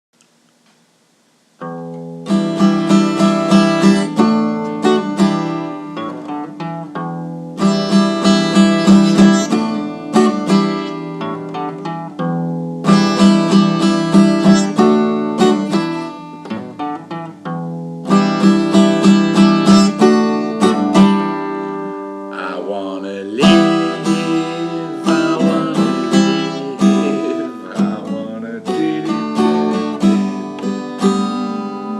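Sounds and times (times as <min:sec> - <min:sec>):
acoustic guitar strumming: 0:01.6 - 0:31.9
wavering sliding-pitch sound: 0:23.4 - 0:29.9.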